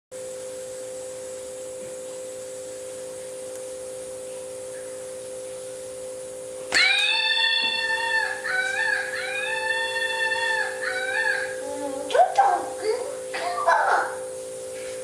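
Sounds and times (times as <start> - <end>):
shrill pitched scream: 6.7 - 11.6.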